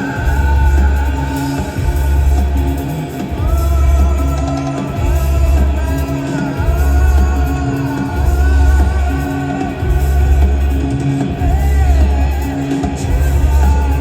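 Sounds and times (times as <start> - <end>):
deep bass notes: 0.0 - 14.0
high voice singing: 0.0 - 14.0
rock band playing live: 0.0 - 14.0.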